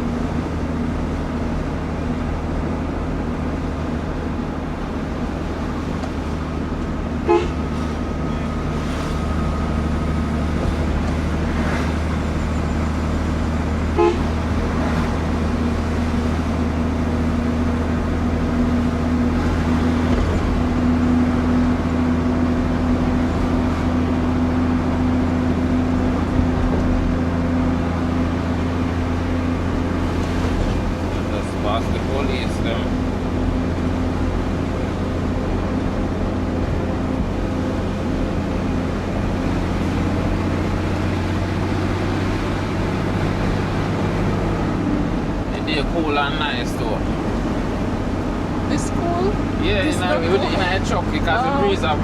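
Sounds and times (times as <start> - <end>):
truck engine running: 0.0 - 52.0
truck horn toots: 7.2 - 8.2, 12.2 - 14.7.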